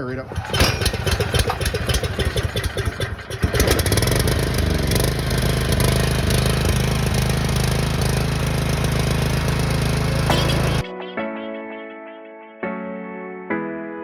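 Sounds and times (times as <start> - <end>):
generator engine running: 0.0 - 10.8.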